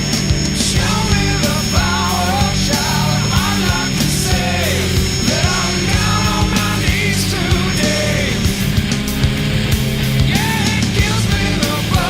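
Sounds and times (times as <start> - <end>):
steady drum beat: 0.0 - 12.0.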